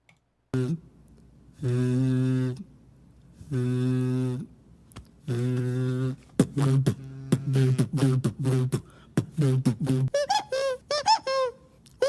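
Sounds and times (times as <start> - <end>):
falling-pitch vocal note: 5.3 - 8.7
hummed bass note: 6.6 - 8.1.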